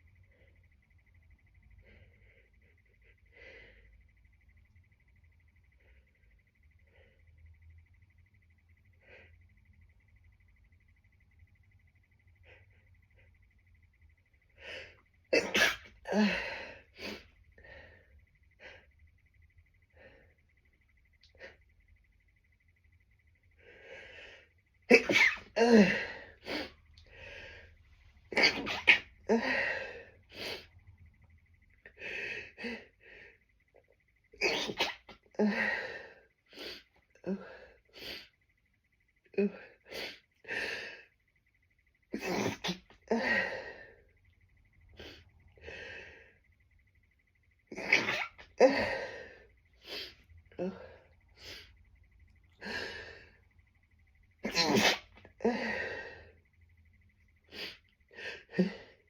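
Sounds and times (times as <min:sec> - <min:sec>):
person sneezing: 0:15.4 - 0:16.4, 0:24.9 - 0:25.9, 0:28.3 - 0:29.0, 0:47.8 - 0:49.0, 0:54.5 - 0:55.6.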